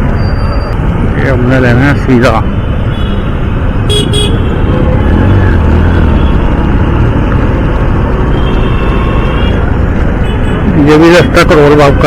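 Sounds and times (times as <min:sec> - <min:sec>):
motorcycle engine: 0:02.9 - 0:10.7.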